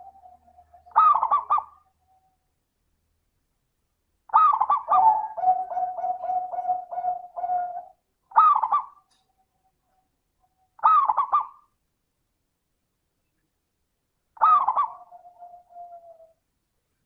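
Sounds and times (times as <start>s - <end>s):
dove cooing: 0.0s - 2.2s, 4.3s - 9.2s, 10.8s - 11.6s, 14.4s - 16.4s.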